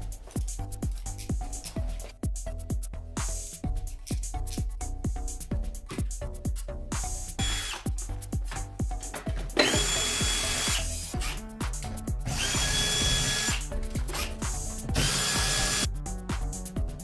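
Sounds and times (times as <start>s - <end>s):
background music with steady beat: 0.0s - 17.0s
power drill whine: 7.4s - 7.8s, 9.6s - 11.4s, 12.3s - 13.6s, 15.0s - 15.9s.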